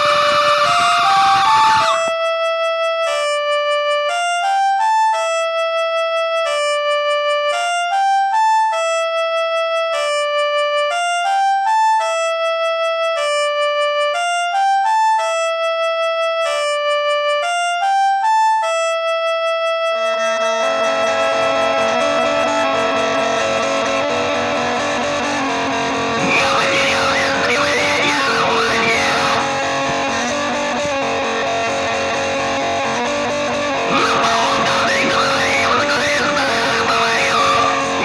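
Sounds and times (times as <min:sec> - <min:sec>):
melodic instrument sustained notes: 0:19.8 - 0:34.7.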